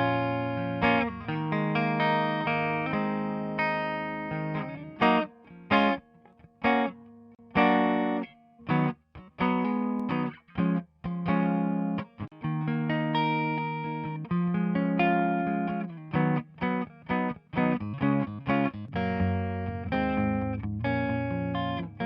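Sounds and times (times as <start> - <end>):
distorted electric guitar chords: 18.0 - 22.0.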